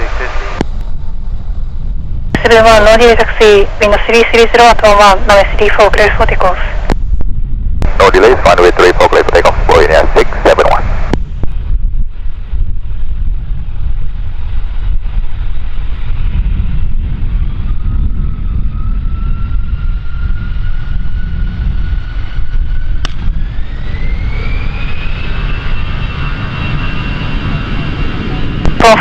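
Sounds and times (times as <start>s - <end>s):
jet engines spooling up: 14.0s - 29.0s.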